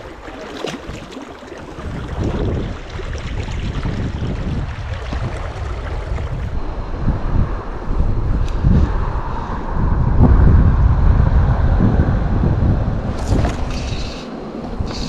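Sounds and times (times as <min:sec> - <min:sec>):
creek water rushing: 0:00.0 - 0:06.8
wind buffeting microphone: 0:00.0 - 0:15.0.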